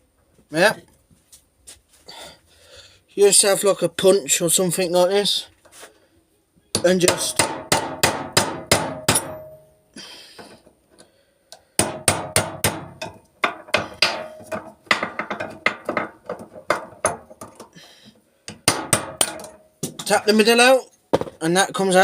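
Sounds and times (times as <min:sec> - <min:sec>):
hammer striking metal punch: 0:06.7 - 0:09.7, 0:11.8 - 0:16.1, 0:18.5 - 0:20.1.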